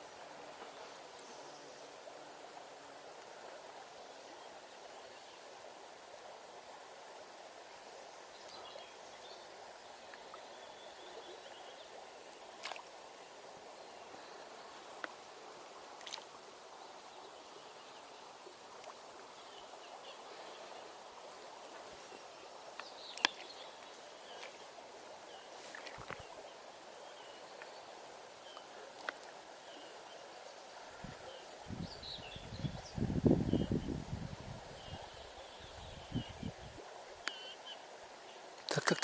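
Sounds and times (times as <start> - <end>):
river water running over riffle: 0.0 - 39.0
faint clicks: 22.7 - 23.5, 28.5 - 29.4
faint chirps: 37.2 - 37.8.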